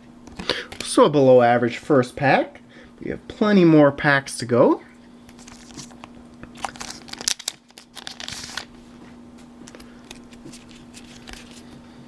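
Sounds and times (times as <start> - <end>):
faint steady hum: 0.0 - 12.0
foil wrapper crinkling: 5.3 - 8.8, 9.6 - 11.8.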